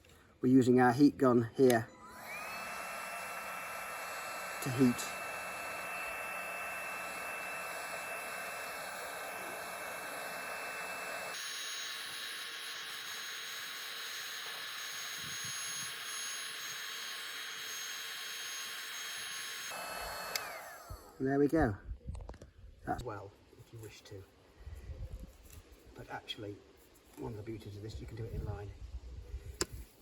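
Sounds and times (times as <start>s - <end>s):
heat gun blowing with whine: 1.8s - 21.3s.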